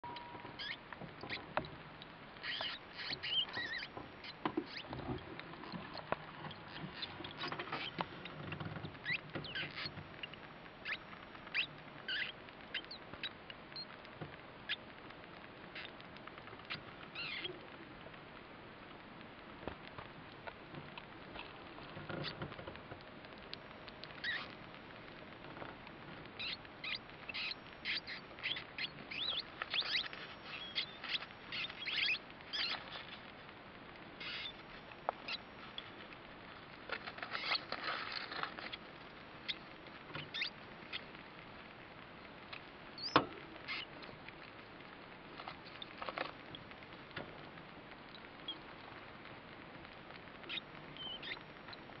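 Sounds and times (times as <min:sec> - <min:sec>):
rat pups squeaking: 0:00.0 - 0:14.0, 0:14.6 - 0:14.9, 0:15.7 - 0:17.8, 0:23.5 - 0:24.7, 0:26.3 - 0:33.4, 0:34.2 - 0:41.2, 0:42.4 - 0:44.5, 0:45.3 - 0:46.8, 0:48.1 - 0:48.7, 0:50.4 - 0:52.0.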